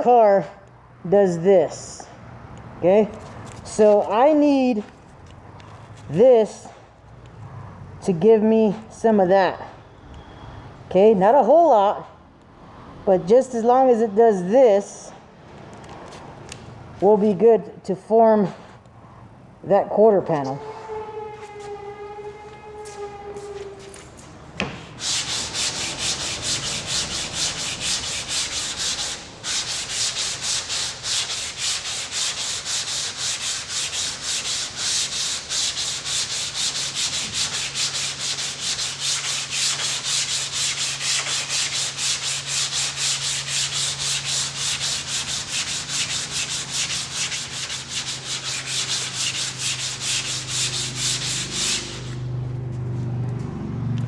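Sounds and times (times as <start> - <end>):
sandpaper rubbing on car panel: 20.7 - 24.2, 24.8 - 52.3.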